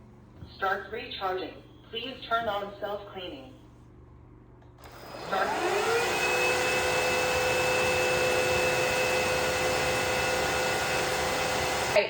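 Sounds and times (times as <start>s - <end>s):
vacuum motor whine: 4.8s - 12.0s.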